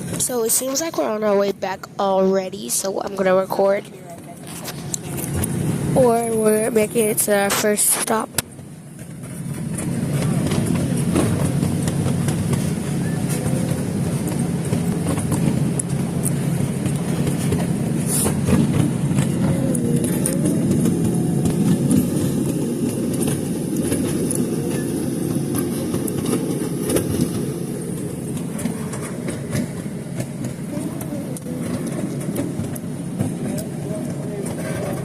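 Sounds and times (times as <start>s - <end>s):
train rumble inside passenger car: 0.0s - 35.0s.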